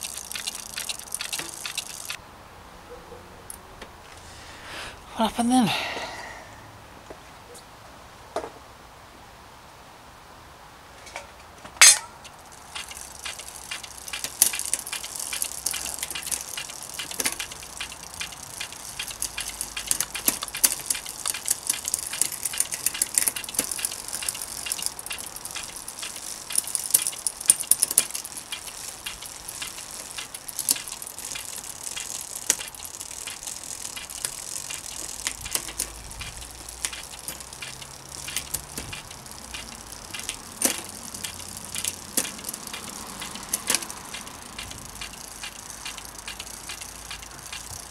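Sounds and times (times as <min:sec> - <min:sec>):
bicycle freewheel ticking: 0:00.0 - 0:02.2, 0:12.3 - 0:47.9
drivetrain clicks: 0:00.0 - 0:02.2, 0:12.2 - 0:47.9
sharp metallic clack: 0:11.1 - 0:33.4.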